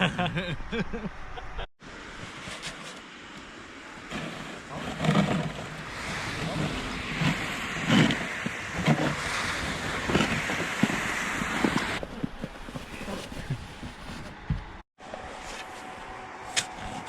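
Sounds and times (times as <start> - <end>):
wind buffeting microphone: 4.0 - 14.8.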